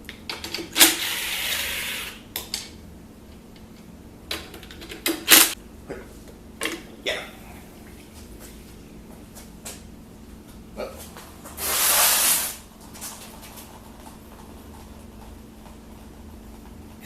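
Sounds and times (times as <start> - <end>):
loud spraying hiss: 11.6 - 12.6.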